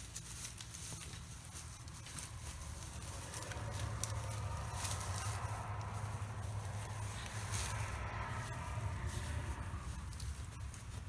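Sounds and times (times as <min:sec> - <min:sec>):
paper and plastic bag rustling: 0:00.0 - 0:11.0
steady low hum: 0:00.0 - 0:11.0.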